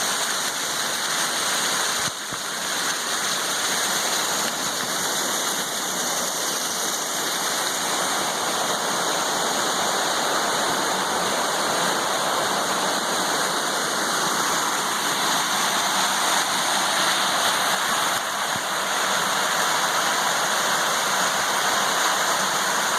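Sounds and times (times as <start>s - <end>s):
creek water flowing: 0.0s - 22.9s.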